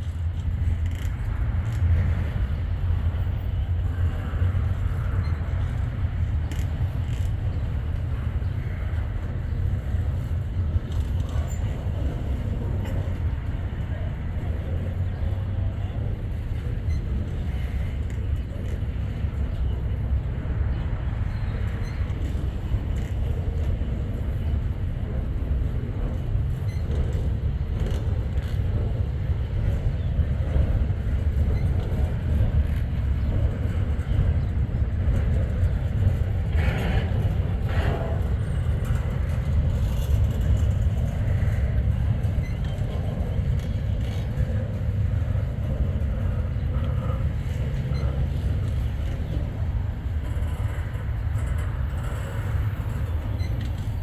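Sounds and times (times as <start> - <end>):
freight train rumbling on rails: 0.0 - 54.0.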